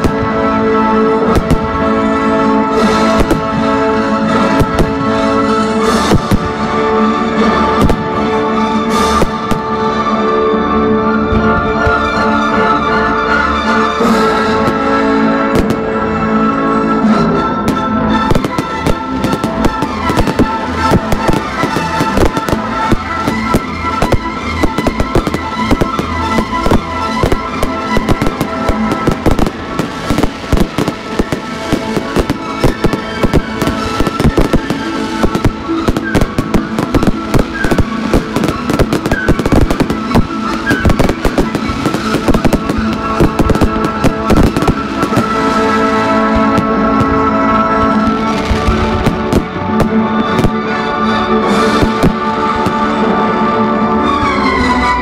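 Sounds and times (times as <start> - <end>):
fireworks bangs and crackling: 0.0 - 10.3, 11.2 - 12.5, 13.7 - 16.3, 17.6 - 53.5
music playing: 0.0 - 55.0.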